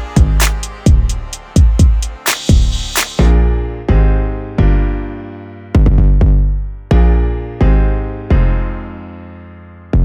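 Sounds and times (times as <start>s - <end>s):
drum-machine beat: 0.0s - 3.4s
electronic keyboard chords: 0.0s - 10.0s.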